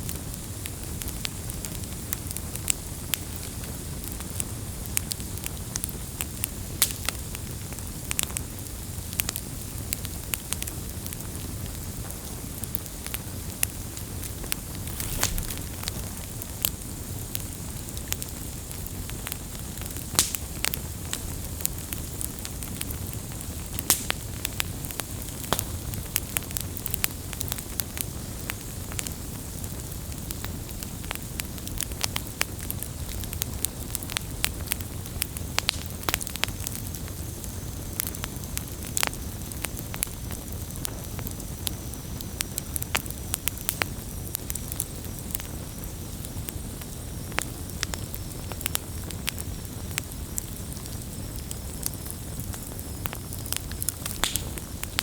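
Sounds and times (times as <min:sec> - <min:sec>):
rumble of flames: 0:00.0 - 0:55.0
wood crackling and popping: 0:00.0 - 0:55.0.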